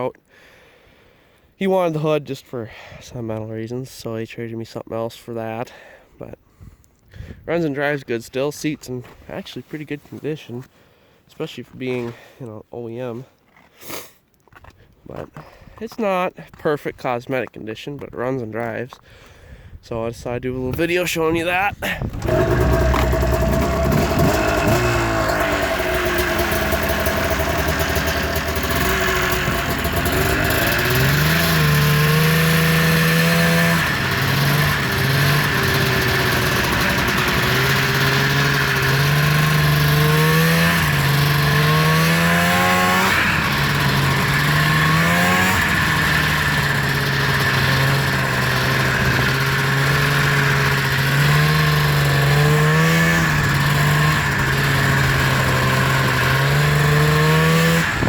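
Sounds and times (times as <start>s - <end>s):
snowmobile engine revving: 21.1s - 58.0s.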